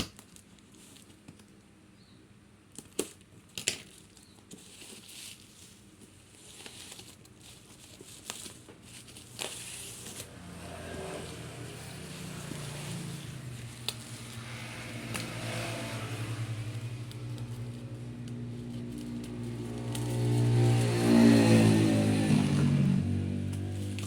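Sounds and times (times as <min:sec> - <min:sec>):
packaging crinkling: 0:02.8 - 0:10.3, 0:16.7 - 0:20.8.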